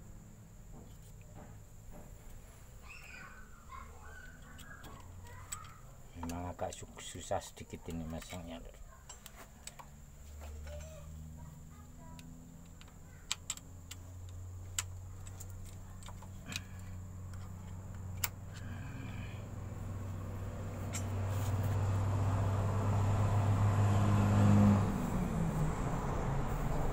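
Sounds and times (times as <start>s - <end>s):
vehicle engine humming: 0.0s - 26.9s
sharp metal clicks: 12.2s - 18.4s.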